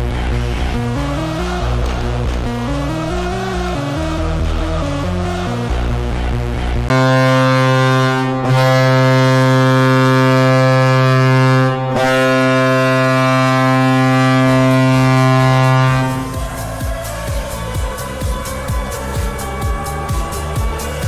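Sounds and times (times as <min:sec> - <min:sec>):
electronic music: 0:00.0 - 0:21.0
deep goal horn blasts: 0:06.9 - 0:21.0.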